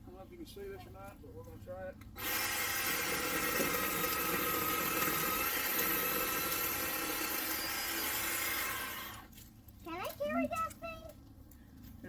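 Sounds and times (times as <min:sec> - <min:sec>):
electric chainsaw motor whine: 0:02.2 - 0:09.3
chain rasping through wood: 0:02.2 - 0:09.4.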